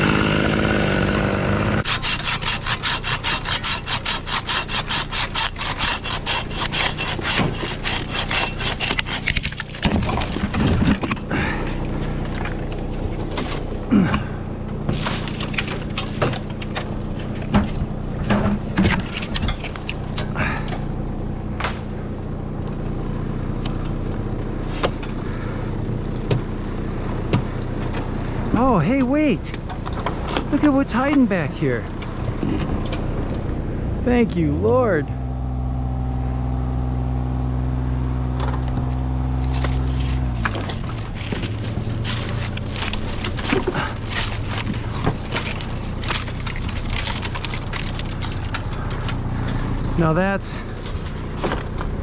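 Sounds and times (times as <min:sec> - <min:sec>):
wood scraping and cracking: 0:00.0 - 0:20.6, 0:38.4 - 0:52.0
engine idling: 0:00.0 - 0:52.0.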